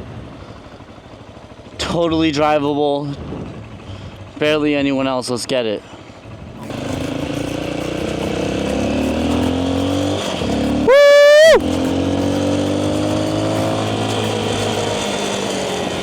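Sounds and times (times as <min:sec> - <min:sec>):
motorcycle engine accelerating: 0:06.4 - 0:16.0
loud high tone: 0:10.8 - 0:11.6.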